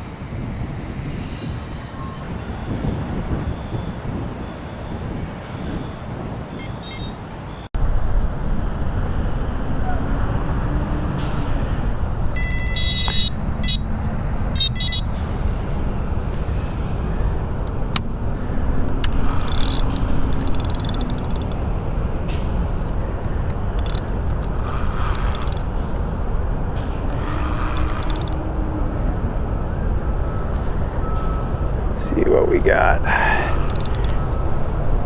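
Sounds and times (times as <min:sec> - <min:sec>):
road traffic rumble: 0:00.0 - 0:35.0
vehicles passing: 0:00.0 - 0:35.0
short high-pitched chirping: 0:06.6 - 0:07.2, 0:14.6 - 0:15.1.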